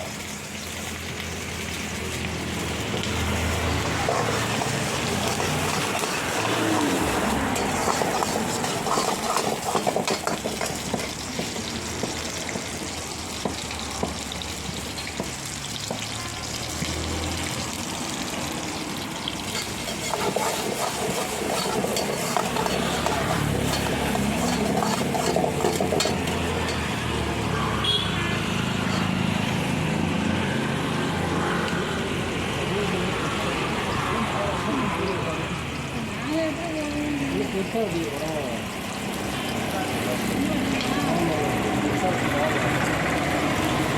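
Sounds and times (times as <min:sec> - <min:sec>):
gravy sizzling in a pan: 0:00.0 - 0:31.4, 0:32.2 - 0:43.9
stirring clicks: 0:04.0 - 0:12.1, 0:19.6 - 0:26.8.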